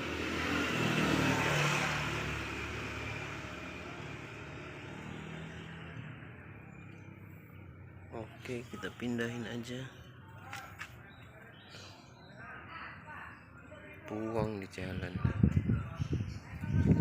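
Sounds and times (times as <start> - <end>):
vehicle passing: 0.0 - 11.1.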